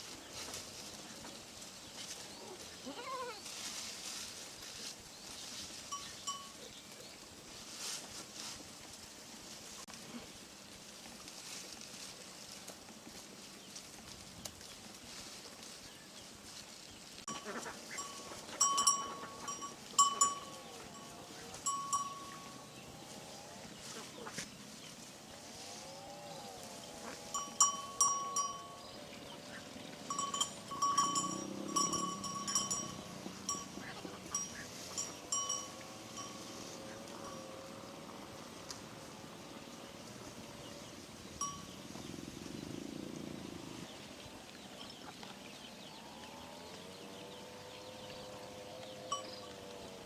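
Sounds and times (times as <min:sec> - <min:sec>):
goats bleating: 0:02.8 - 0:03.5
livestock bell clinking: 0:05.8 - 0:06.8, 0:17.3 - 0:24.0, 0:27.0 - 0:42.6, 0:47.5 - 0:50.0.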